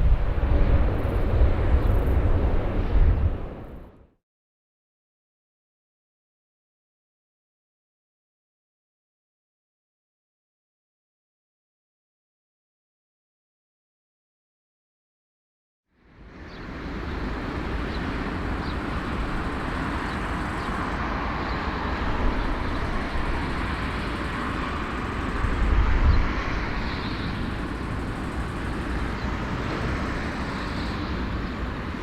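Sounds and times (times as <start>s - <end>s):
aircraft engine rushing: 0.0s - 3.9s, 16.2s - 32.0s.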